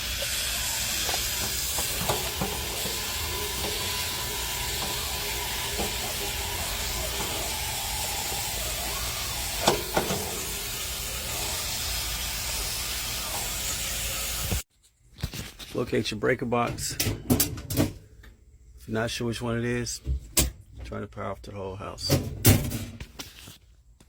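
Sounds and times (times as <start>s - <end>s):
garden hose spraying water: 0.0s - 14.7s.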